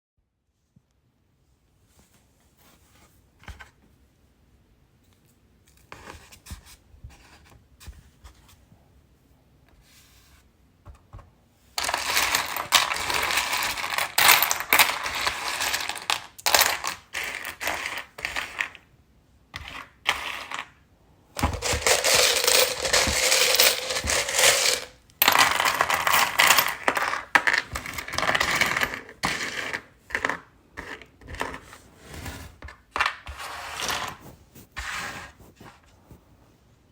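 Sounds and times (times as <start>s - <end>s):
gems clattering together: 11.8s - 18.7s, 21.4s - 30.3s.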